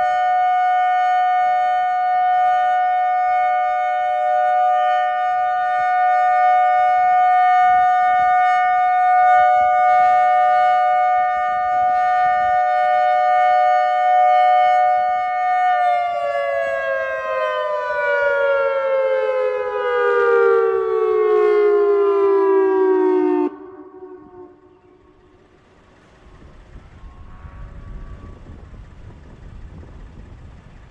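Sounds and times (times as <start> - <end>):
outdoor warning siren: 0.0 - 30.9
wind rumbling on microphone: 25.0 - 30.9.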